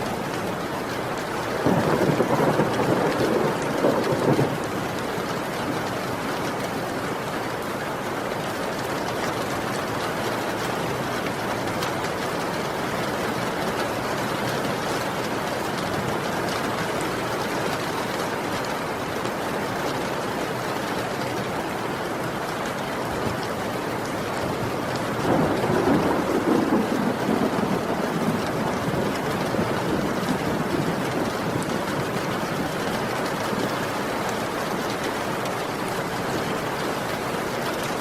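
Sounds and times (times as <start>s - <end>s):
heavy rain falling: 0.0s - 38.0s
thunder rumbling: 1.6s - 5.8s, 25.0s - 33.2s.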